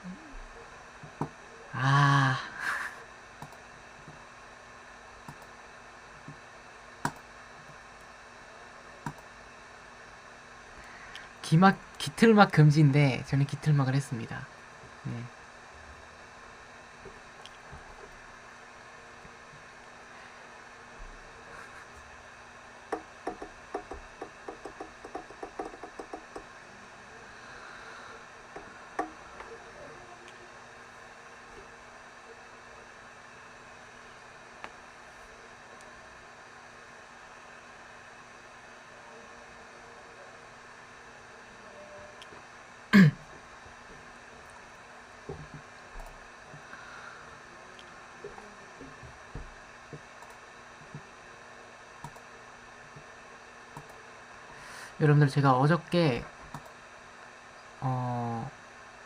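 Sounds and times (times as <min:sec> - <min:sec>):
faint steady hiss: 0:00.0 - 0:59.0.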